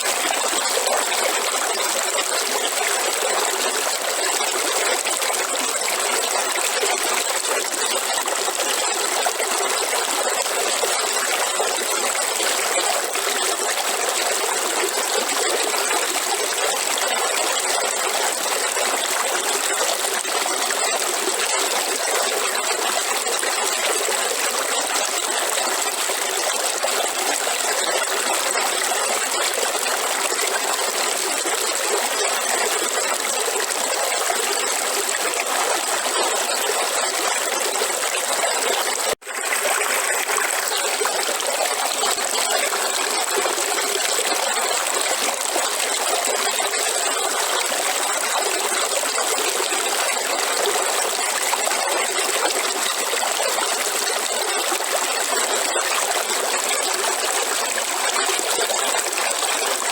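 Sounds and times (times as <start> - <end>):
river water flowing: 30.1 - 59.9.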